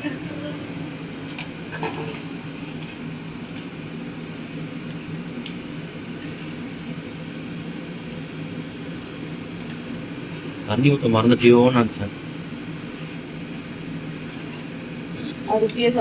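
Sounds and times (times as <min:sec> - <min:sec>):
low mechanical hum: 0:00.0 - 0:16.0.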